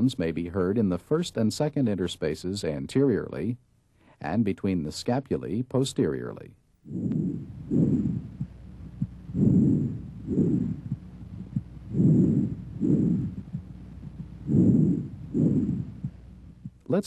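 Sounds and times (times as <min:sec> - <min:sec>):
muffled breathing through stethoscope: 0:06.9 - 0:16.8.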